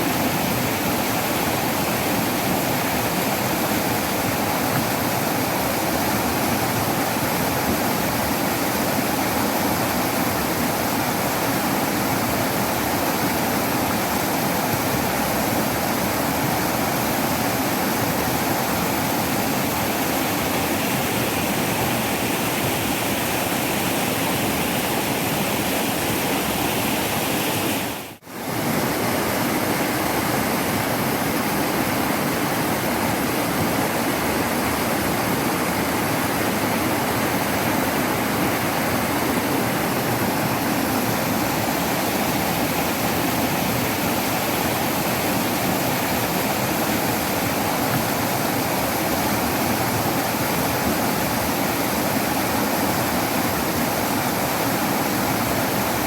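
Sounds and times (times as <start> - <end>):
waterfall rushing: 0.0 - 56.0.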